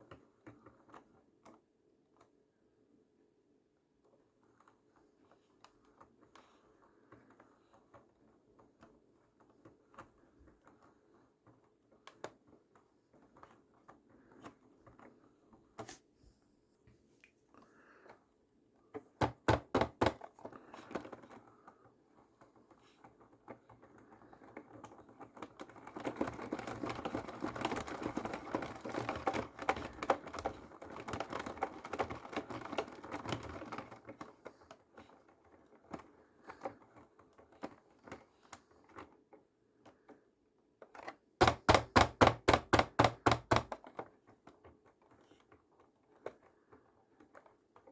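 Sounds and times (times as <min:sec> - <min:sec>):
toy car knocking in washing machine: 0:19.2 - 0:20.3, 0:41.4 - 0:44.0.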